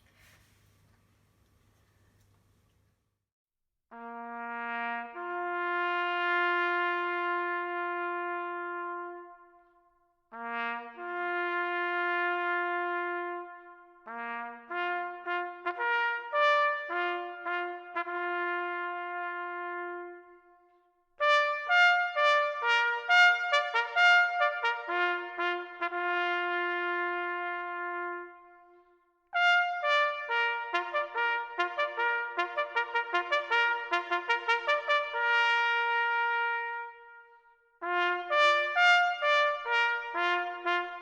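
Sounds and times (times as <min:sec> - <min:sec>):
bugle call on brass instrument: 0:21.2 - 0:28.7, 0:29.4 - 0:37.2.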